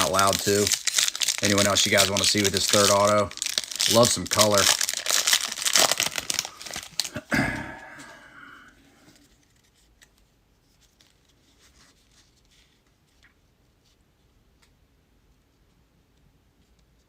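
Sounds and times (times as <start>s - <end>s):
foil wrapper tearing and crinkling: 0.0s - 7.3s.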